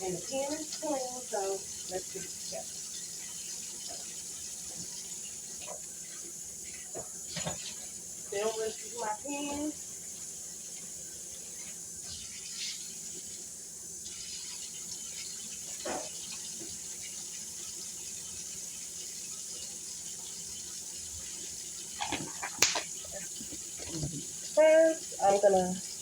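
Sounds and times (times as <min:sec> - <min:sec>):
faucet running into sink: 0:00.0 - 0:26.0
pan clattering: 0:22.0 - 0:24.3.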